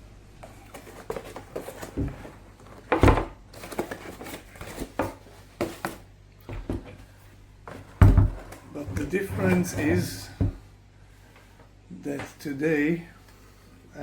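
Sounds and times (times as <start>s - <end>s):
packaging rustling and scraping: 0.5s - 6.1s, 7.6s - 10.6s.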